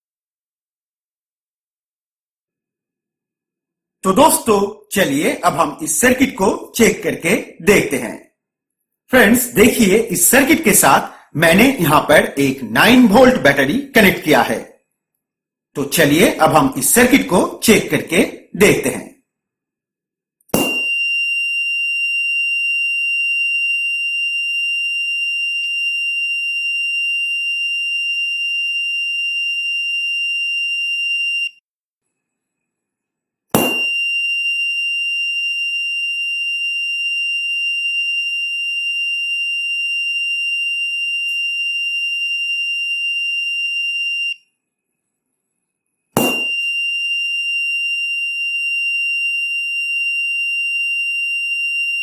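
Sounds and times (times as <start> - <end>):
sharp knock: 20.6 - 20.9, 33.6 - 34.0, 46.2 - 46.6.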